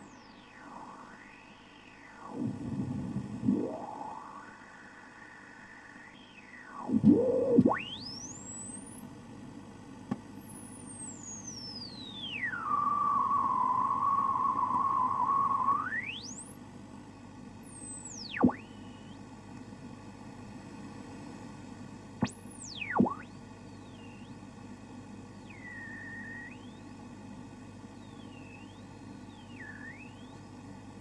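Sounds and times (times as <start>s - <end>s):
radio tuning whistle: 0.0s - 9.1s, 10.4s - 16.5s, 17.8s - 19.2s, 22.2s - 24.4s, 25.4s - 26.9s, 28.0s - 30.4s
static hiss: 0.0s - 9.3s, 22.2s - 31.0s
faint click: 1.8s - 2.4s.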